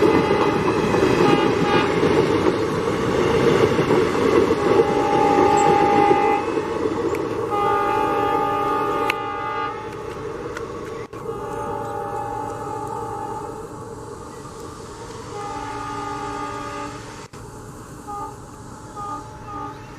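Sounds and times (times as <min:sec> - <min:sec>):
locomotive horn blasts: 0:00.0 - 0:02.1, 0:04.6 - 0:06.7, 0:07.4 - 0:10.0, 0:11.1 - 0:13.7, 0:15.3 - 0:17.1, 0:18.0 - 0:19.9
diesel locomotive engine running: 0:00.0 - 0:19.9.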